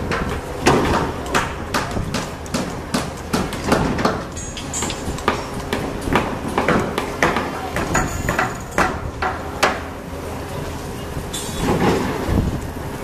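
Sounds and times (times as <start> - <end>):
sharp metallic clanks: 0.6 - 5.7.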